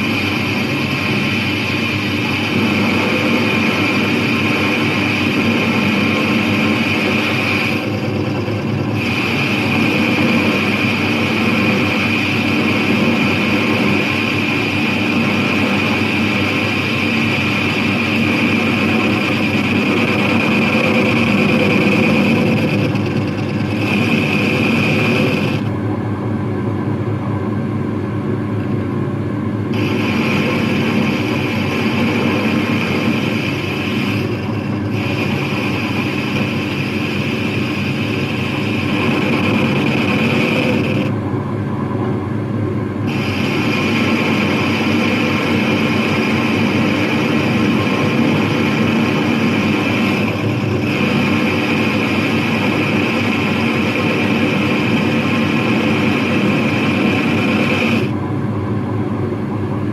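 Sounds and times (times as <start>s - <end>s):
power tool whining: 0.0s - 25.7s, 29.7s - 41.1s.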